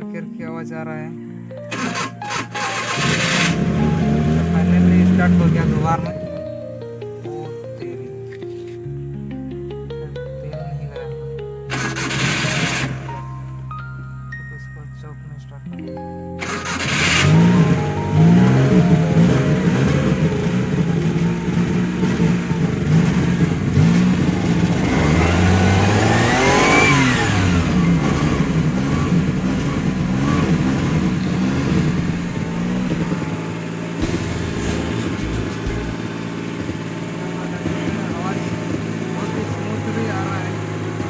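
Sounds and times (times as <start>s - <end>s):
car engine revving: 1.7s - 6.4s, 11.7s - 13.3s, 16.4s - 41.0s.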